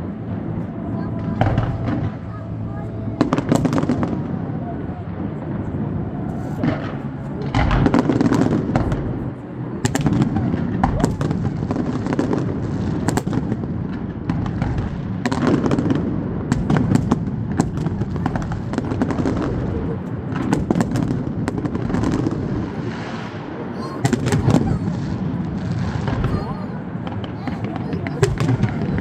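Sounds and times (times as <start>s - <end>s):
fireworks bangs and crackles: 0.0s - 4.4s, 6.3s - 29.0s
crowd chatter: 0.0s - 29.0s.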